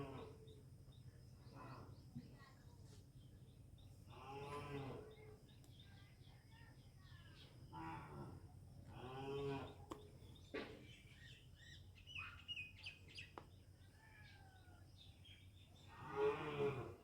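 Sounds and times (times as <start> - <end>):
small birds chirping: 0.0 - 7.8, 8.7 - 16.3.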